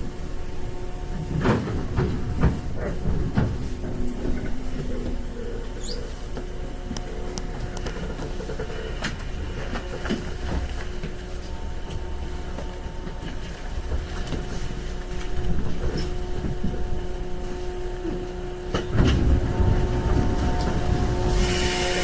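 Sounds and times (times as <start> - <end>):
train cabin low rumble: 0.0 - 22.0.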